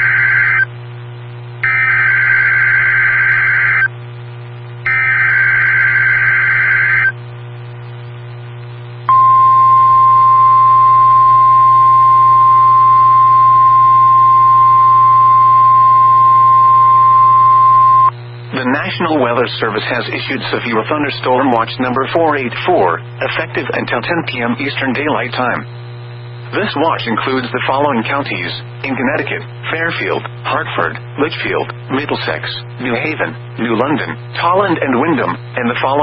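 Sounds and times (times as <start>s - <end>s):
low steady hum: 0.0s - 36.0s
single-pitch warning alarm tone: 1.6s - 3.9s, 4.9s - 7.1s, 9.1s - 18.1s.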